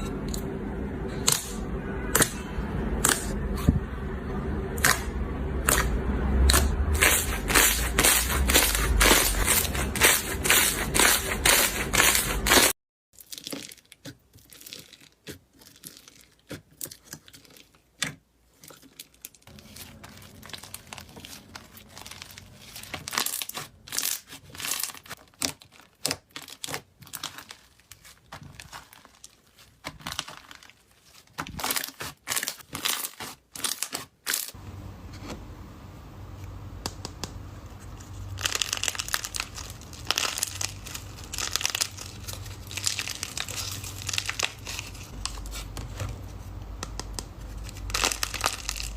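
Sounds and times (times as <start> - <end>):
slime crackling and popping: 4.8 - 5.9, 6.5 - 34.6, 38.3 - 45.7, 46.8 - 48.9.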